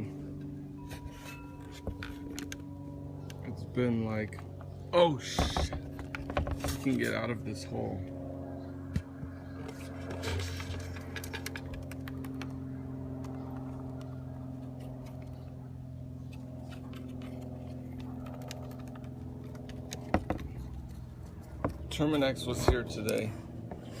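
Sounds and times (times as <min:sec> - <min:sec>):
steady low hum: 0:00.0 - 0:24.0
insect scratching on plastic: 0:09.6 - 0:12.6, 0:16.3 - 0:21.9.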